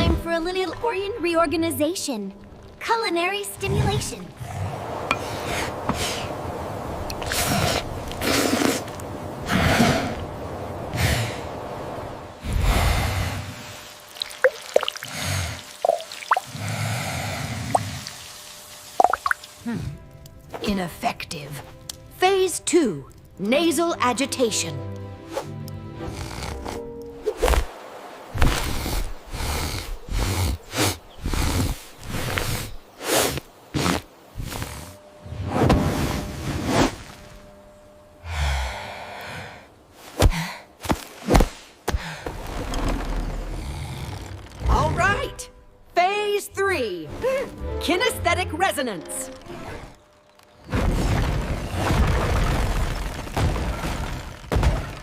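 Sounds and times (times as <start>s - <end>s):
sharp drip-like plinks: 14.1s - 15.1s, 15.7s - 16.5s, 19.0s - 19.6s
heavy breathing and sniffing: 26.0s - 27.0s, 28.5s - 35.0s.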